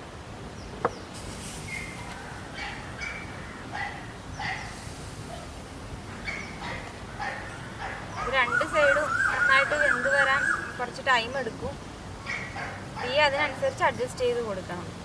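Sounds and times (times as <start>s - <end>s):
background hiss: 0.0s - 15.0s
dog barking: 2.2s - 8.6s, 12.2s - 13.3s.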